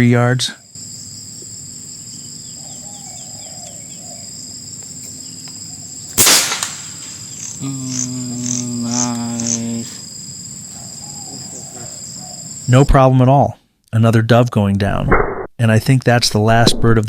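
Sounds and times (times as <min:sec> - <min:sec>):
insect buzzing: 0:00.0 - 0:12.8
air rifle shot: 0:06.2 - 0:07.3.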